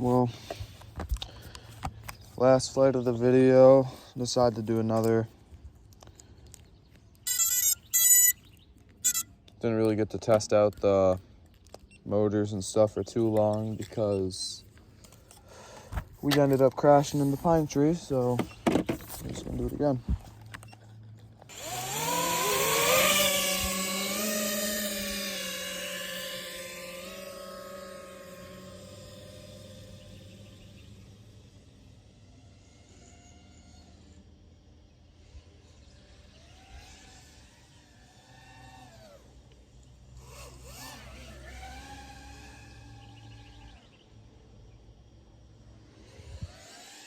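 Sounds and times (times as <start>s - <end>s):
drone motors whining: 0.0s - 47.0s.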